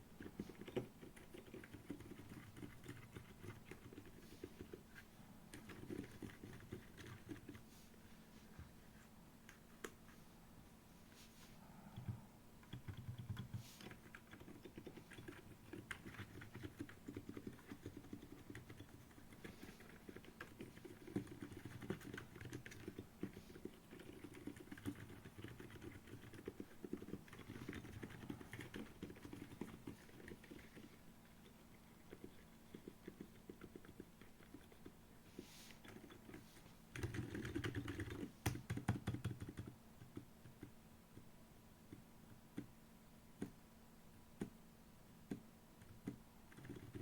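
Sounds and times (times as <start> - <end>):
mechanical keyboard typing: 0.2 - 4.8, 5.5 - 7.6, 12.0 - 30.8, 32.1 - 34.9, 35.8 - 40.7, 45.3 - 47.0.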